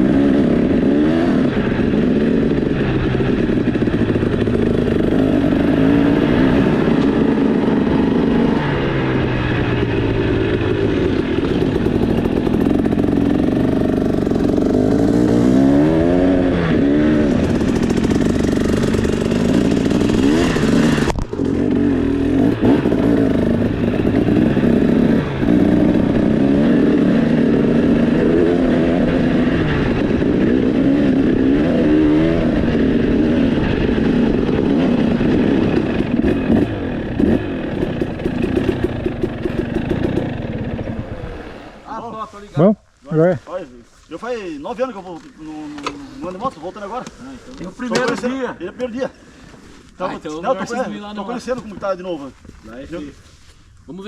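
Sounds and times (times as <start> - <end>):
two-stroke motorcycle engine revving: 0.0 - 41.8.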